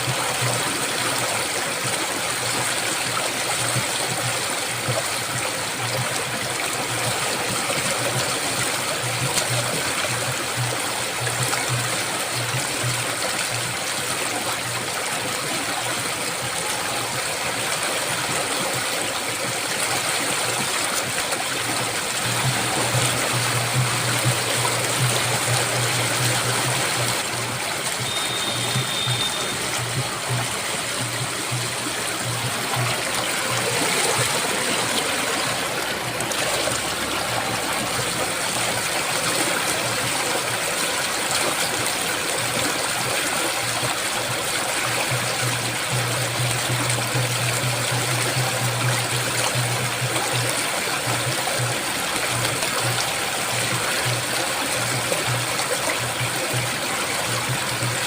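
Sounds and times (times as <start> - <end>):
river water rushing: 0.0 - 58.0
faint high whistle: 28.0 - 29.6.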